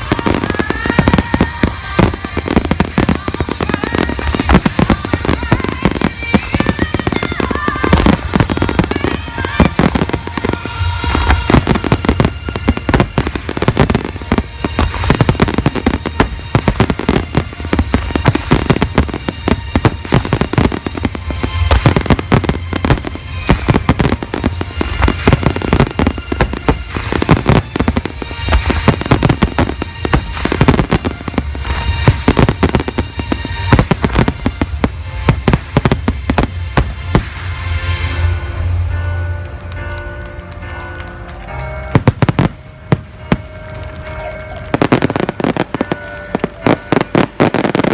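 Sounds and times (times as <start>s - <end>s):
firework bursts: 0.0s - 37.8s
music playing: 0.0s - 47.9s.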